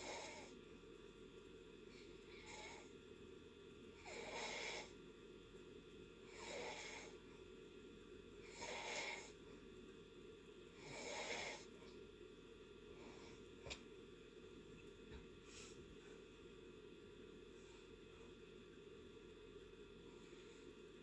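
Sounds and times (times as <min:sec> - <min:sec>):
soft snoring: 0:00.0 - 0:00.6, 0:04.0 - 0:05.0, 0:06.2 - 0:07.2, 0:08.4 - 0:09.4, 0:10.8 - 0:11.8.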